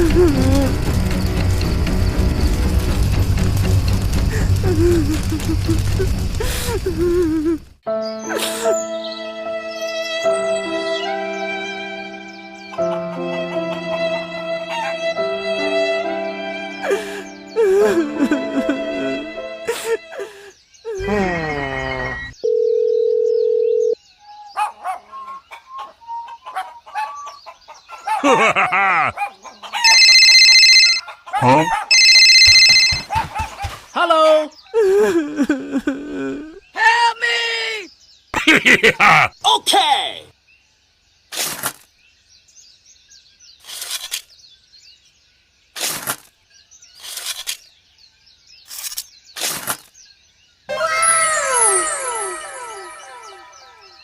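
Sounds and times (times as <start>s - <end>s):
small birds chirping: 16.7s - 30.1s, 30.7s - 54.0s
electronic beep: 29.9s - 31.0s, 31.9s - 33.1s.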